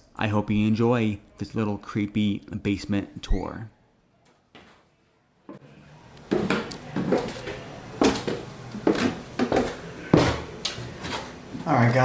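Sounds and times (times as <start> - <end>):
footsteps down stairs: 5.5 - 11.8.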